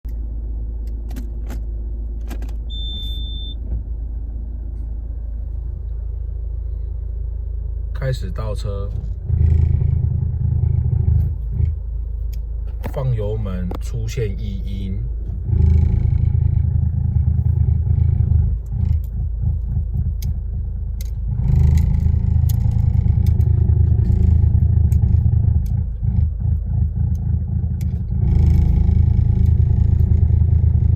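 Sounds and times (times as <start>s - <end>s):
diesel engine idling: 0.1s - 30.9s
high-pitched beep: 2.7s - 3.6s.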